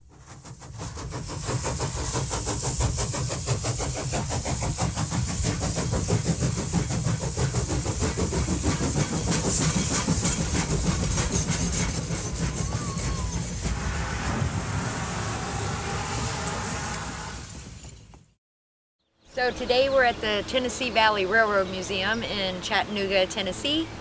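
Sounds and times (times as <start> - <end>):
steady steam hiss: 0.0 - 16.4
locomotive low rumble: 0.0 - 18.4
locomotive rhythmic beat: 0.2 - 14.4.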